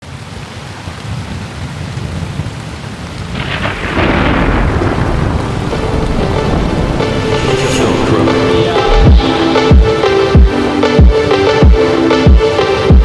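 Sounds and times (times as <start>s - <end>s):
steady rain: 0.0s - 13.0s
rumbling thunder: 1.1s - 10.6s.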